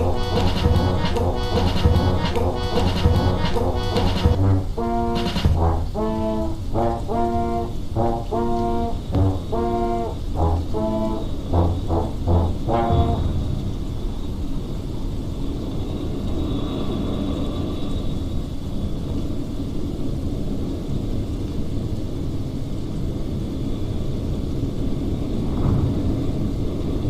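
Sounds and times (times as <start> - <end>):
low rumble: 0.0 - 15.4
faint high whine: 0.0 - 19.2.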